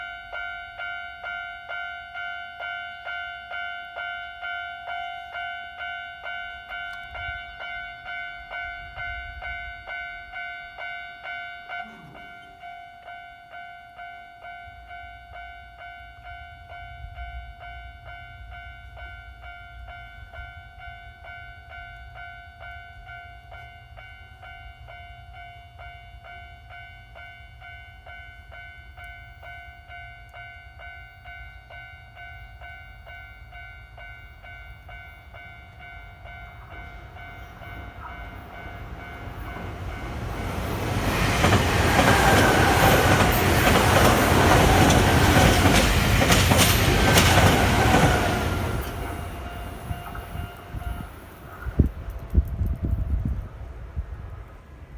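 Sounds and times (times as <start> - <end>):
level crossing warning bell: 0.0 - 52.1
train rumbling past: 33.4 - 54.9.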